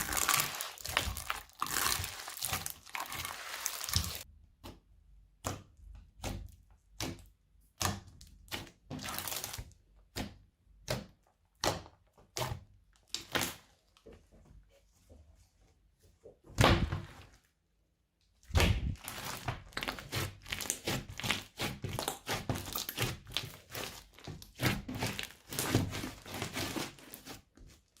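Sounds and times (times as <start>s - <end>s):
slime squished by hand: 0.0s - 4.2s, 18.4s - 27.4s.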